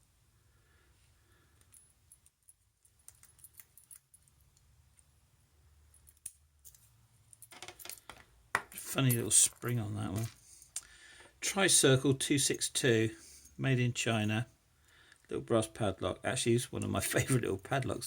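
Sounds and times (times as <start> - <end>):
padlock rattling: 1.6 - 4.7.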